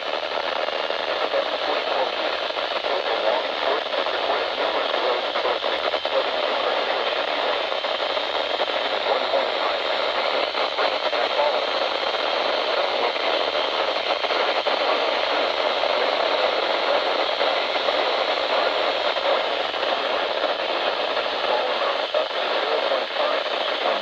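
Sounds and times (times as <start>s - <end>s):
radio static hiss: 0.0s - 24.0s.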